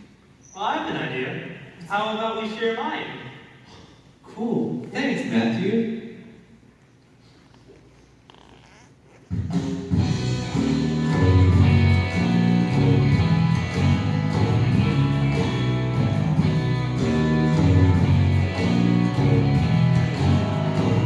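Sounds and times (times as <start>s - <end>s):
bass line: 9.4s - 21.0s
upbeat instrumental music: 9.4s - 21.0s
strummed guitar: 9.9s - 21.0s.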